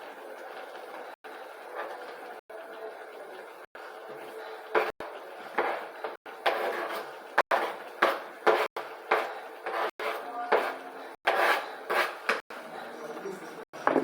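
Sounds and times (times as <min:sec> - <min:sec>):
spoon stirring food in pot: 0:04.7 - 0:12.4.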